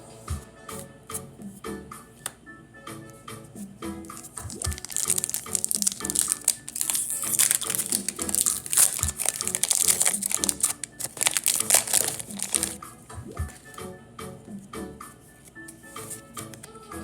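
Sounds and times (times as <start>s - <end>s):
background music with beat: 0.0s - 17.0s
foil wrapper crinkling: 4.2s - 12.8s.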